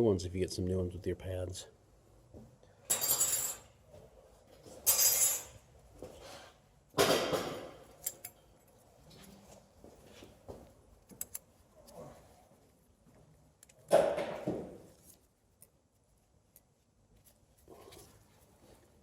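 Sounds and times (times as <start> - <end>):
metal parts clattering: 2.9 - 3.7, 4.8 - 5.6
metal tools clinking and rattling: 2.9 - 3.8, 4.7 - 5.6, 7.3 - 8.4.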